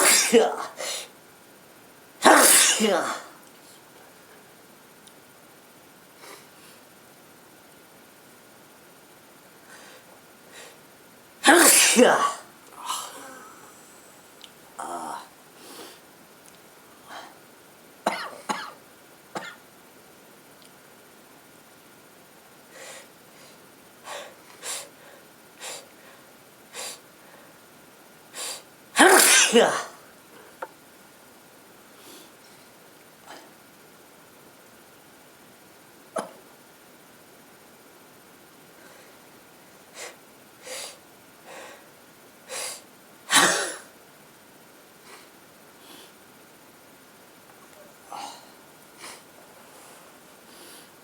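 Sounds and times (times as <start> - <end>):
woman sneezing loudly: 0.0 - 1.1, 2.2 - 3.4, 11.4 - 13.6, 28.4 - 30.0, 42.5 - 43.9
faint breaths: 9.6 - 10.9, 12.8 - 16.2, 31.9 - 33.6, 38.7 - 42.9, 45.0 - 46.3, 47.7 - 51.0.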